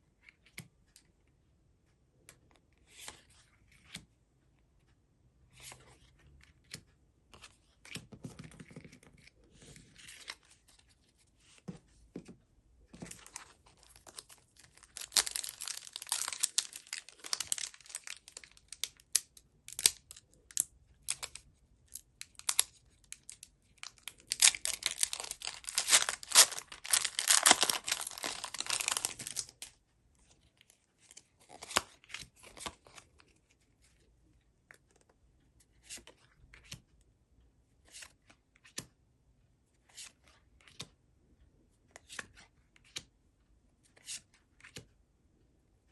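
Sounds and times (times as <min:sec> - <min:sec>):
wrapper rustling and handling: 0:13.0 - 0:21.4, 0:22.2 - 0:29.7
packaging tearing and crackling: 0:13.9 - 0:19.0, 0:23.9 - 0:29.6.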